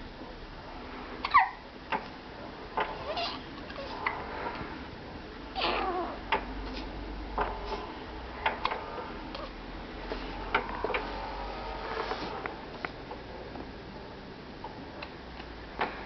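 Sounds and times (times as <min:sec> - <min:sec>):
baby hiccupping: 0:03.0 - 0:04.0, 0:05.6 - 0:06.2.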